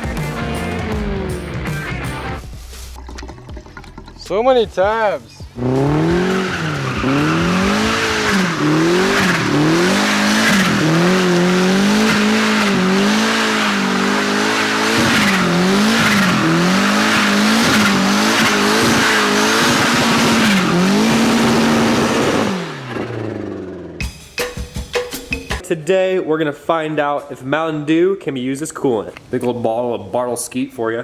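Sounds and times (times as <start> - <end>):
car engine revving hard: 0.0 - 1.7, 5.6 - 24.0
tyres screeching: 5.6 - 22.5.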